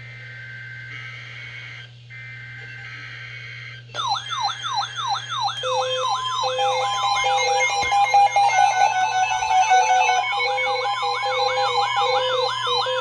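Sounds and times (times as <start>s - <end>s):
on-off beeps: 4.0s - 13.0s
sweeping siren tone: 4.0s - 13.0s.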